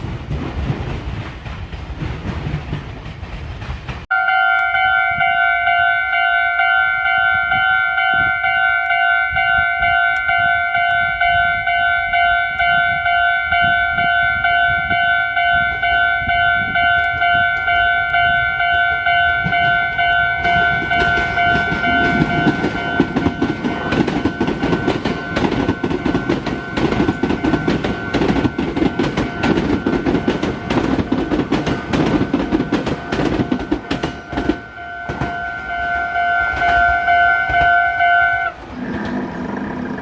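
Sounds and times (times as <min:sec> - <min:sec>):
train wheels clattering over rail joints: 0:00.0 - 0:04.1, 0:14.8 - 0:35.9
level-crossing alarm ringing: 0:04.1 - 0:38.6.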